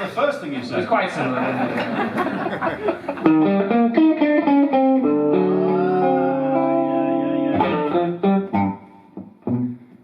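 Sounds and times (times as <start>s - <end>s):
blues guitar playing: 3.2s - 10.0s
sharp guitar hit: 7.4s - 9.8s.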